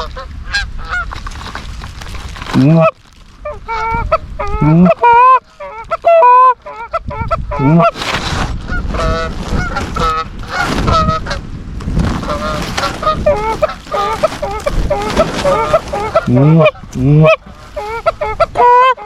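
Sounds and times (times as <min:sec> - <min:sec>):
geese honking: 0:02.6 - 0:08.0, 0:08.7 - 0:11.5, 0:12.2 - 0:19.0.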